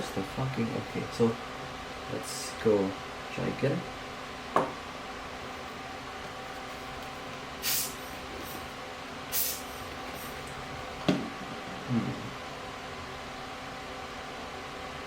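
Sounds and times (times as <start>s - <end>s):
background hiss and hum: 0.0s - 15.0s
soft knock: 4.6s - 4.8s
puffs of air: 5.6s - 11.0s.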